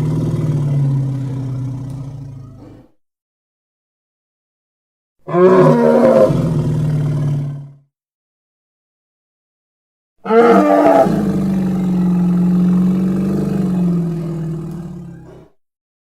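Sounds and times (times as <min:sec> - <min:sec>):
deep bellowing creature roar: 0:00.0 - 0:02.9, 0:05.3 - 0:07.8, 0:10.2 - 0:15.6.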